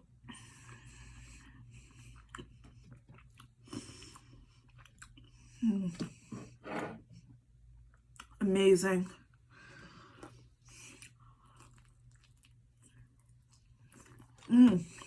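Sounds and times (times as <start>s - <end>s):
person chewing food: 0.4s - 6.3s, 9.3s - 15.0s.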